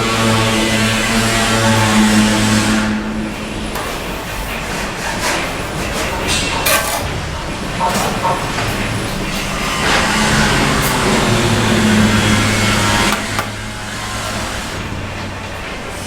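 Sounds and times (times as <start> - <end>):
steady background noise: 0.0 - 16.0
trowel scraping and tapping mortar: 13.1 - 13.5.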